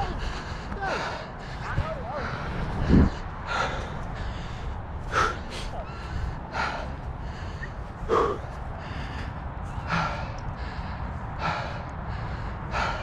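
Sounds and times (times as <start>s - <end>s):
person breathing hard: 0.0s - 13.0s
steady low rumble: 0.0s - 13.0s.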